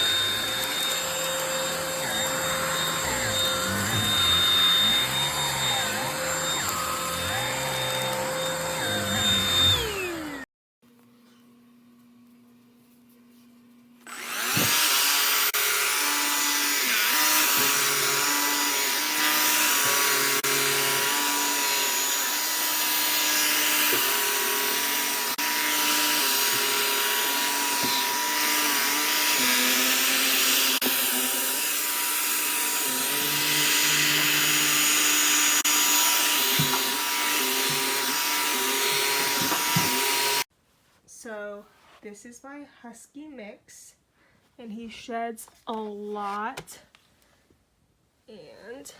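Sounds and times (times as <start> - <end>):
cordless hand vacuum running: 0.0 - 10.5, 14.1 - 40.5.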